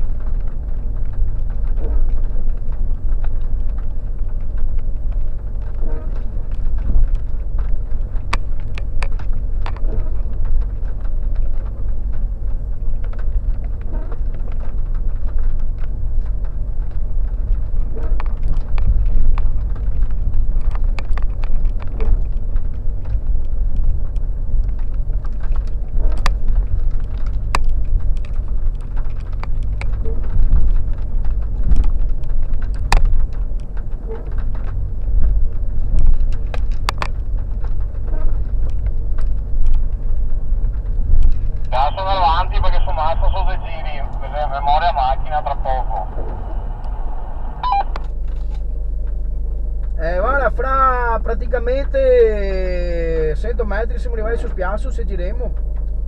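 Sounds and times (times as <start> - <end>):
car engine rumble: 0.0 - 56.0.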